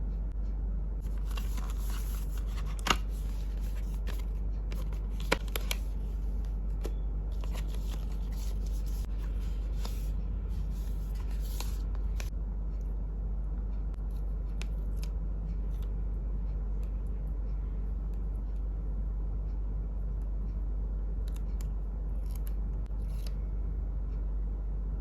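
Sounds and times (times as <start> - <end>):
steady low hum: 0.0 - 25.0
packaging rustling: 1.0 - 6.5, 7.4 - 10.1.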